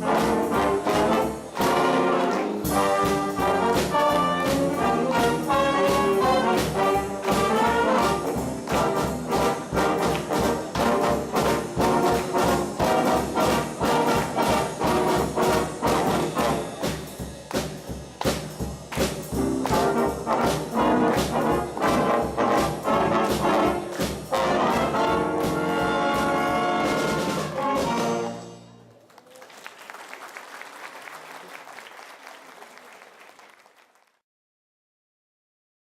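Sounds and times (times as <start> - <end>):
trumpets and trombones: 0.0 - 17.1, 19.3 - 28.9
big band playing jazz: 0.0 - 29.0.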